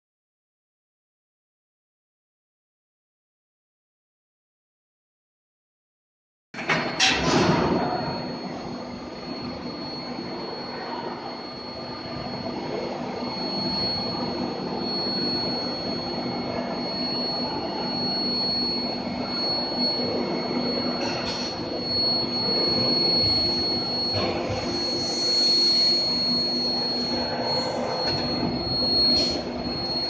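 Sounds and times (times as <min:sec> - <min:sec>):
high-pitched machine whine: 0:06.6 - 0:30.0
low machine hum: 0:06.6 - 0:30.0.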